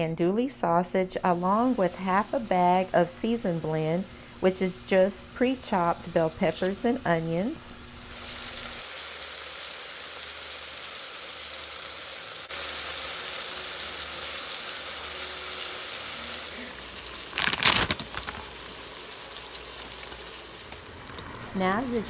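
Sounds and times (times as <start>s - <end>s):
sausage sizzling in a pot: 0.6s - 22.0s.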